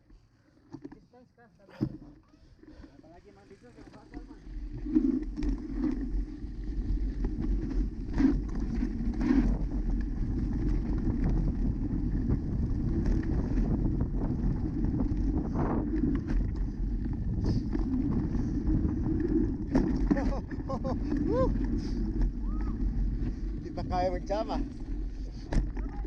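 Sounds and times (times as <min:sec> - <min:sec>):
bike tyres rolling on dirt: 0:03.0 - 0:26.0
wind buffeting microphone: 0:04.3 - 0:26.0
bike clicks and rattles: 0:04.9 - 0:21.2.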